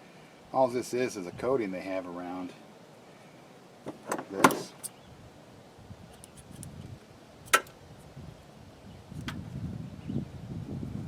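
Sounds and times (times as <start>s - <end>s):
hand tools clicking and snapping: 7.5s - 7.8s.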